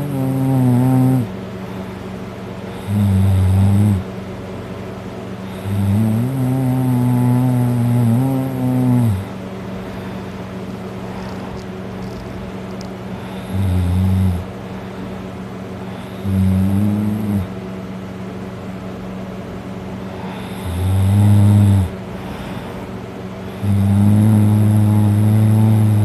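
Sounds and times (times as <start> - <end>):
person snoring loudly: 0.0 - 1.3, 2.7 - 4.1, 5.4 - 9.4, 13.2 - 14.5, 15.9 - 17.5, 20.2 - 22.7, 23.5 - 26.0
steady low hum: 0.0 - 26.0.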